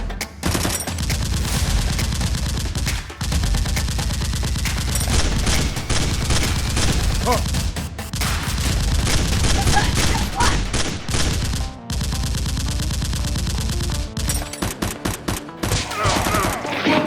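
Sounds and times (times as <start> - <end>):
rapid gunfire: 0.3 - 16.7.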